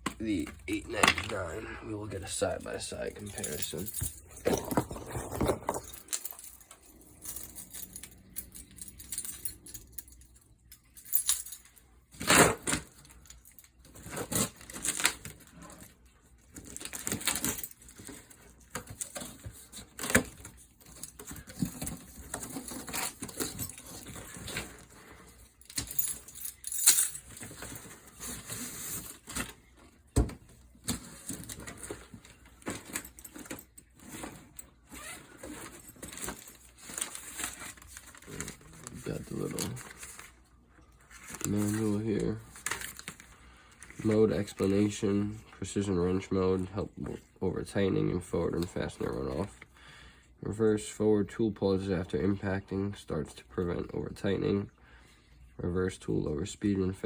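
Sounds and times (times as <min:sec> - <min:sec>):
objects clinking and knocking: 0:00.0 - 0:01.5, 0:03.2 - 0:15.9, 0:16.5 - 0:40.2.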